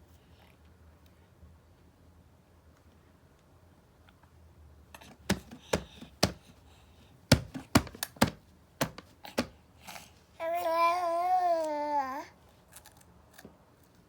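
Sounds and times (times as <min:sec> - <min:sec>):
small child vocalizing: 0:10.4 - 0:12.3.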